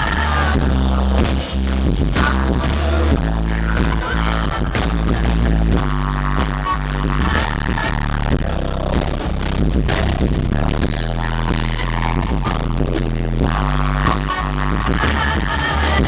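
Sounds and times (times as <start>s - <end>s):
bass notes: 0.0s - 16.0s.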